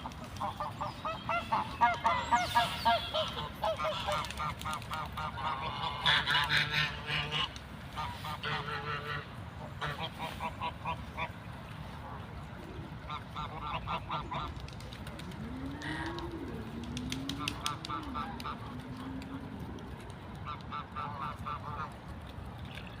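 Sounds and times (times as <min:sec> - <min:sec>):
waterfowl honking quacks: 0:00.0 - 0:11.4, 0:13.0 - 0:14.6, 0:20.4 - 0:22.0.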